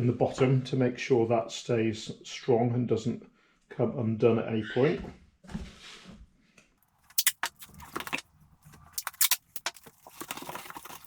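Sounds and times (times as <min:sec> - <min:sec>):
tape and cardboard box crackling: 0:06.8 - 0:11.0.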